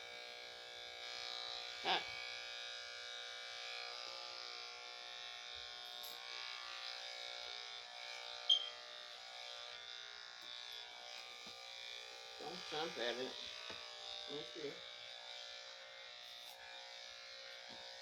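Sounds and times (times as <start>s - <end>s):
electric clippers buzzing: 0.0s - 18.0s
short high squeak: 8.5s - 8.7s.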